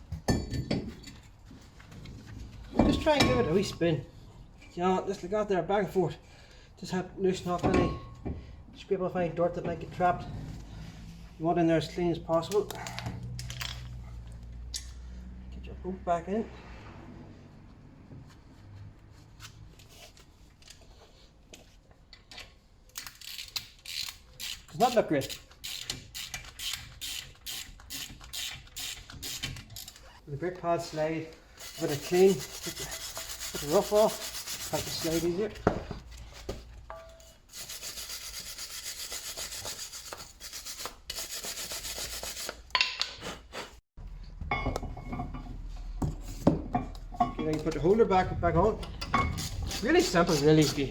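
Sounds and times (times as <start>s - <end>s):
metal parts clinking: 12.7s - 14.0s
wire brush scraping metal: 31.6s - 35.4s.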